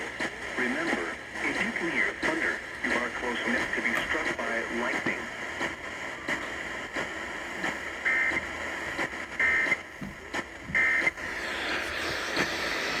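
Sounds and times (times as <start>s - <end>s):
radio hiss and crackles: 0.0s - 13.0s
emergency alert data tones: 10.8s - 11.2s.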